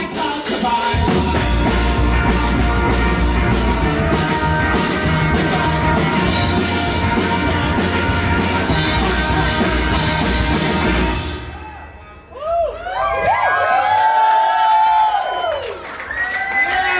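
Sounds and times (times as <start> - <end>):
live rock band playing: 0.0 - 12.3
audience whooping and cheering: 9.0 - 16.9.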